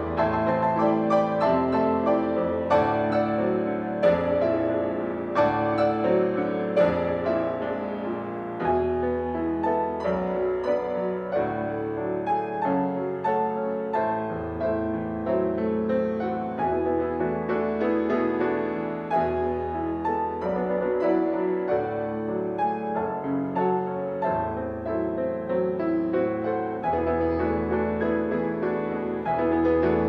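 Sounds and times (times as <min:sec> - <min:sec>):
piano duet playing: 0:00.0 - 0:30.0.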